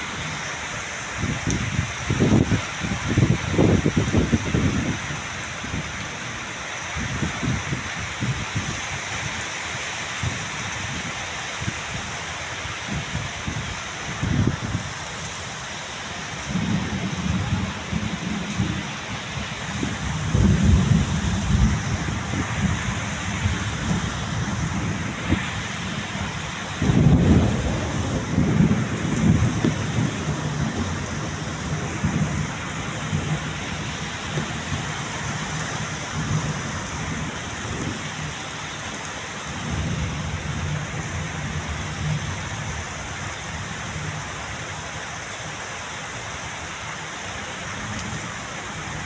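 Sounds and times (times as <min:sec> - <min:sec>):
heavy rain falling: 0:00.0 - 0:49.0
rolling thunder: 0:16.4 - 0:34.9.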